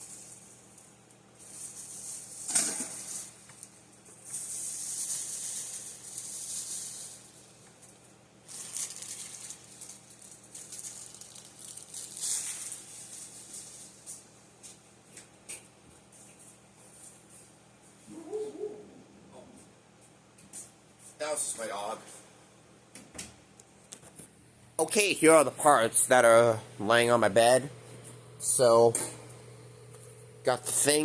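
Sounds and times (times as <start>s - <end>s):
packaging rustling and crinkling: 8.5s - 14.3s.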